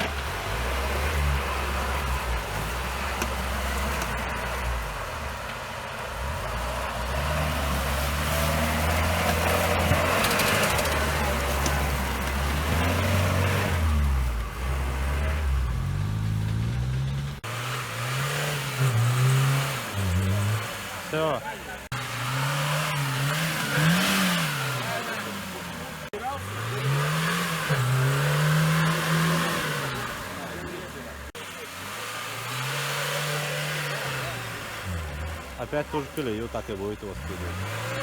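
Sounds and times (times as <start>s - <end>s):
off-road vehicle engine revving: 0.0s - 38.0s
different engine note: 8.5s - 31.3s.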